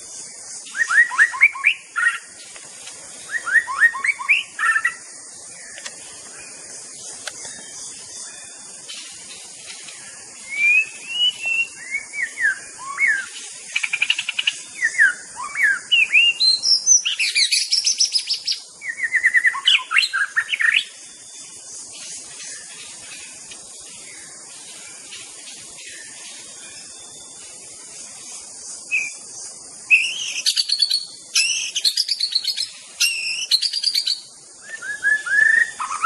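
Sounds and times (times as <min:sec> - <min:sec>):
steady hiss: 0:00.0 - 0:36.0
songbird whistling and trilling: 0:00.6 - 0:02.3, 0:03.2 - 0:05.0, 0:10.4 - 0:21.3, 0:28.9 - 0:29.2, 0:29.8 - 0:36.0.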